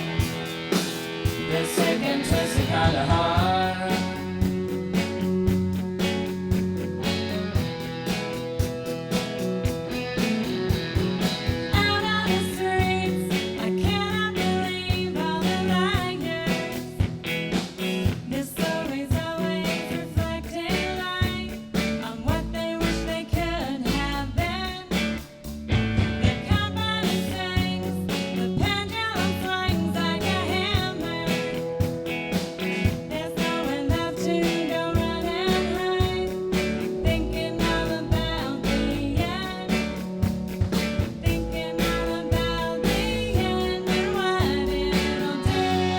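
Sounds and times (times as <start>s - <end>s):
rock band playing live: 0.0s - 45.9s
person singing: 1.4s - 4.4s, 33.1s - 40.0s, 41.2s - 45.9s.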